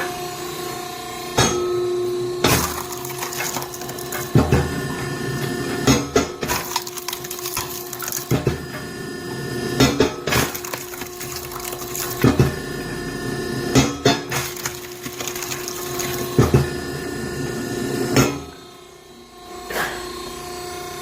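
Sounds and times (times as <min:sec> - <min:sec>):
hydraulic log splitter humming: 0:02.2 - 0:18.6.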